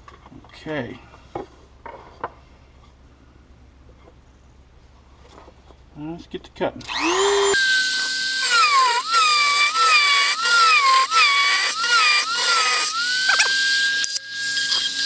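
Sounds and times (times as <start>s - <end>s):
rotary tool whining: 6.8s - 15.0s.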